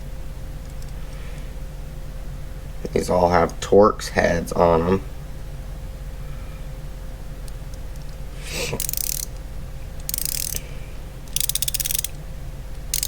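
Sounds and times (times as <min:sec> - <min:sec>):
ratchet wrench clicking: 0:08.8 - 0:09.4, 0:10.0 - 0:10.6, 0:11.2 - 0:12.2.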